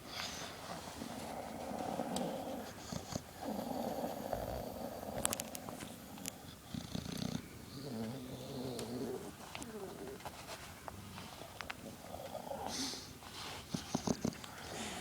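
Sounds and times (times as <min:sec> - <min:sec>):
dog snoring: 0:01.0 - 0:10.2, 0:11.8 - 0:13.1, 0:13.7 - 0:15.0.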